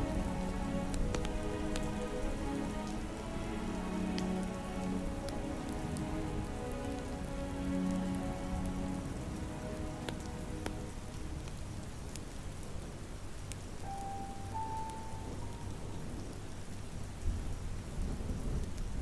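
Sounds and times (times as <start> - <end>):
slow ambient music: 0.0 - 18.6
soft rain: 0.0 - 19.0.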